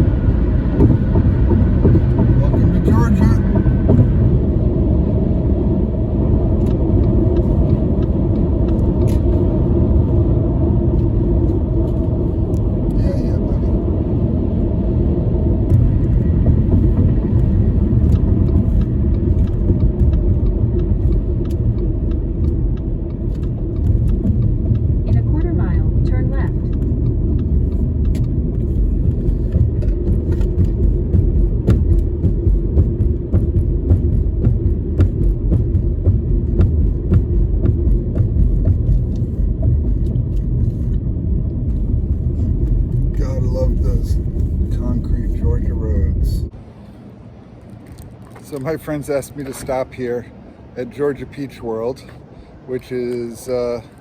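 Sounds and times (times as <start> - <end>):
car road and engine rumble: 0.0 - 54.0
faint regular ticking: 16.5 - 40.8.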